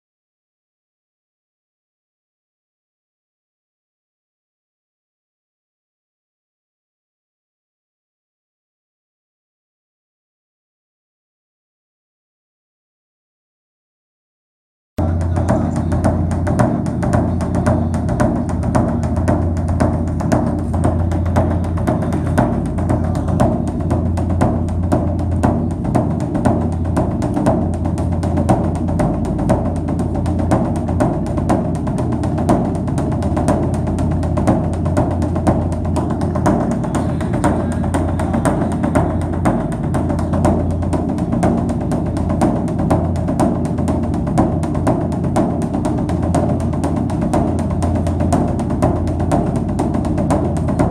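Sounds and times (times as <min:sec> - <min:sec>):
instrumental music with drum beat: 0:15.0 - 0:50.9.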